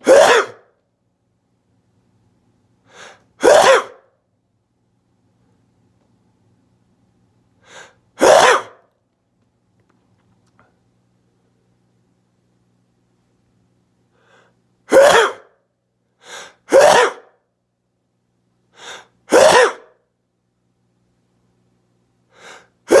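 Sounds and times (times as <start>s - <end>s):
person sneezing: 0.0s - 0.7s, 2.9s - 4.1s, 7.7s - 8.8s, 14.9s - 15.5s, 16.3s - 17.3s, 18.8s - 20.0s, 22.4s - 23.0s.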